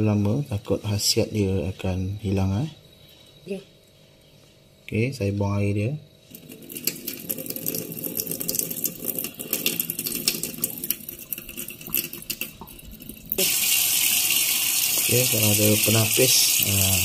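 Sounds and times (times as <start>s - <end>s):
running water gushing: 6.3s - 17.0s
water dribbling: 6.4s - 17.0s.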